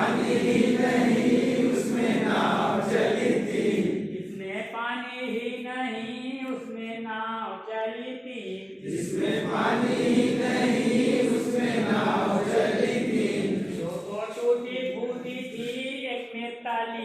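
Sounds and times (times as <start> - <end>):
group singing in unison: 0.0 - 4.1, 8.8 - 14.0
noisy din of group: 0.0 - 4.1.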